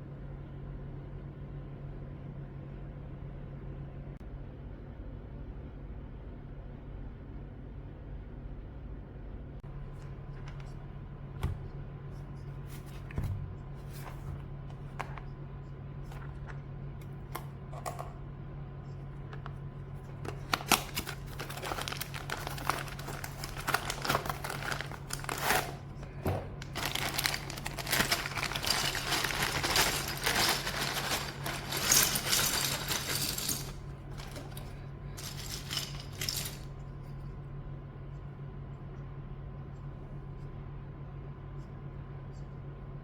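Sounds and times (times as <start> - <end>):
packaging crinkling: 20.1 - 36.6.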